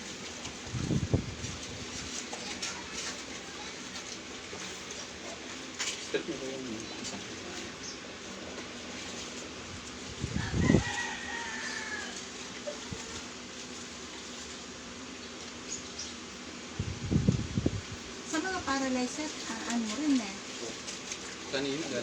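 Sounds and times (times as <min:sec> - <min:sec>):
rooster crowing: 0:10.2 - 0:12.5.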